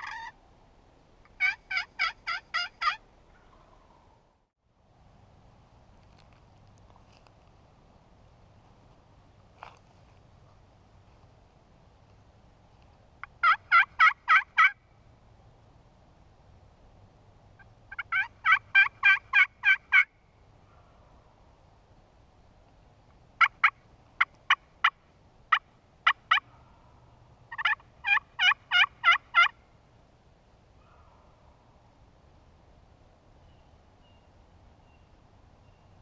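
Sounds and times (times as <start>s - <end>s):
wild turkey yelping: 0.0s - 0.4s, 1.3s - 4.2s, 13.3s - 14.8s, 17.9s - 20.1s, 23.4s - 26.8s, 27.5s - 29.6s.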